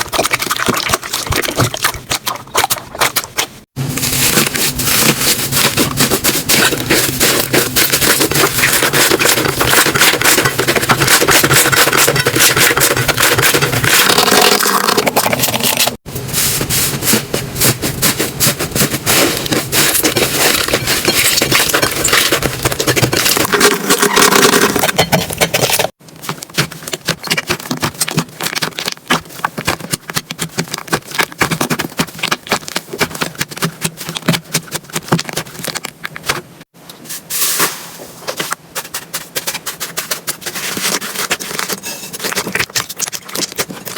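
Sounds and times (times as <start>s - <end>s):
slime crackling and popping: 25.6s - 36.4s.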